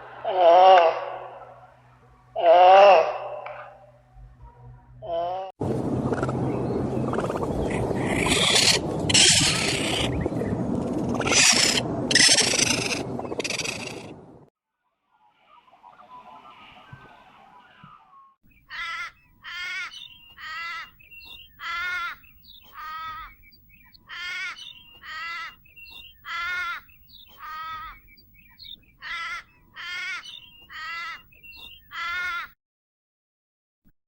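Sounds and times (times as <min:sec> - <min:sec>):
crow cawing: 0:18.7 - 0:20.9, 0:21.6 - 0:23.4, 0:24.1 - 0:25.6, 0:26.2 - 0:28.0, 0:29.0 - 0:31.2, 0:31.9 - 0:32.6.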